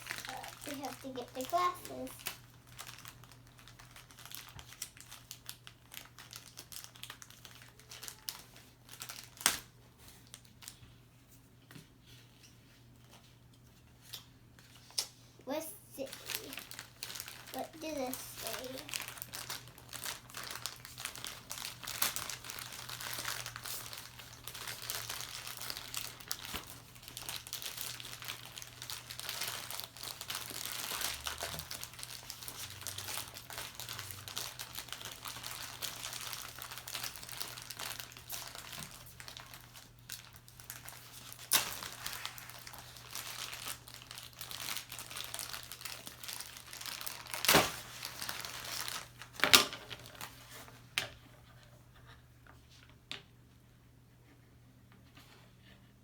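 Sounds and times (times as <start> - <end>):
plastic packaging crinkling: 0.0 - 10.8, 16.0 - 50.8
packaging tearing: 16.2 - 49.4.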